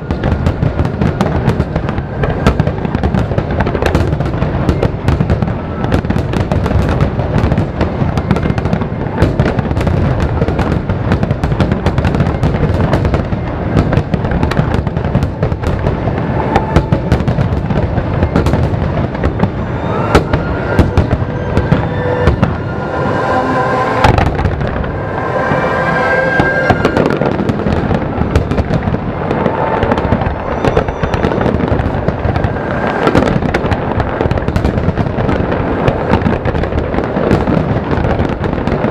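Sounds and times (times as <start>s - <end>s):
fireworks bangs and crackling: 0.0s - 38.9s.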